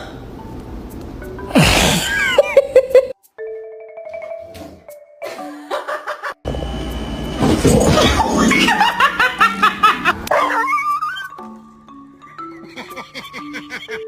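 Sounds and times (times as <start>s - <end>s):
light background music: 0.0s - 6.3s, 10.3s - 14.0s
person laughing: 1.5s - 3.2s, 5.2s - 6.4s, 8.0s - 11.4s, 12.2s - 14.0s.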